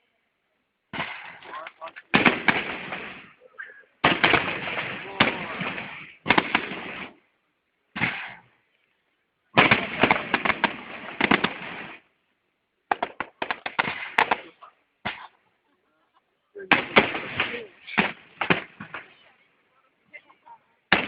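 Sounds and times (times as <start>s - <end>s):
fireworks bangs and crackling: 0.9s - 3.4s, 4.0s - 7.2s, 8.0s - 8.5s, 9.6s - 12.1s, 12.9s - 15.2s, 16.7s - 19.3s.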